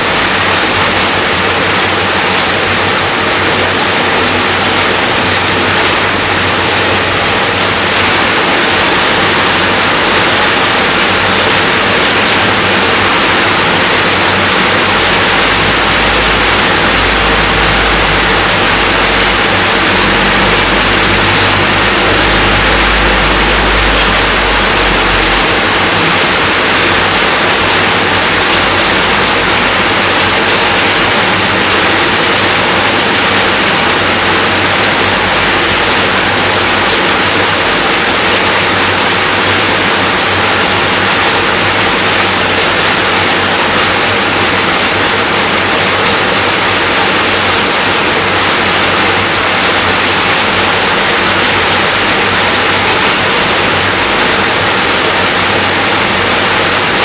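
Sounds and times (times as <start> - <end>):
steady rainfall: 0.0 - 57.0
low rumble: 14.7 - 29.8.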